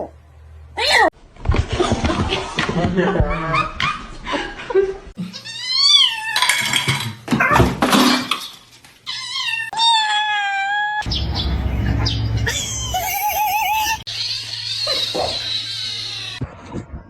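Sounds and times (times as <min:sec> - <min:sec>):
cat meowing: 0:12.4 - 0:14.0.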